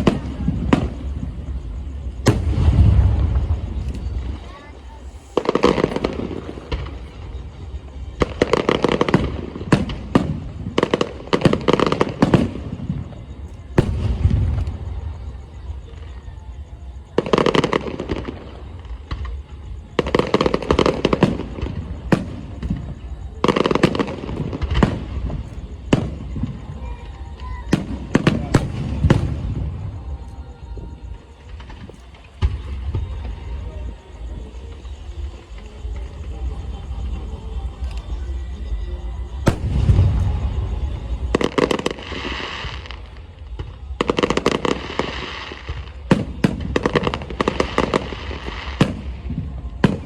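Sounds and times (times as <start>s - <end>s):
fireworks bangs and crackles: 0.0s - 50.0s.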